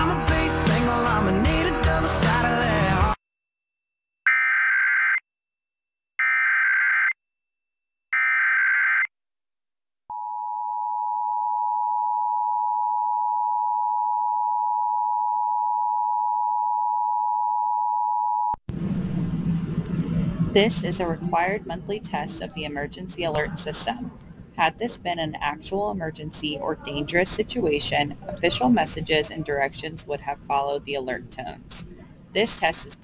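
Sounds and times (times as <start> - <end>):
announcer speaking: 20.6 - 33.0.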